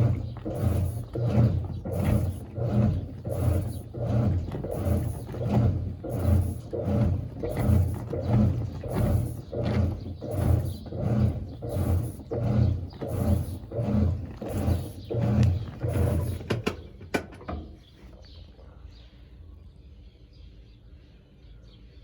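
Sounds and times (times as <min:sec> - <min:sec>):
water swishing: 0:00.0 - 0:16.5
washing machine agitating: 0:00.0 - 0:18.2.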